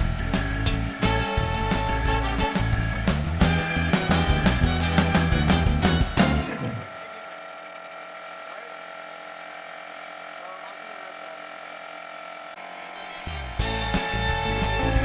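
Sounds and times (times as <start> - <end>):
background music: 0.0 - 6.9, 13.0 - 15.0.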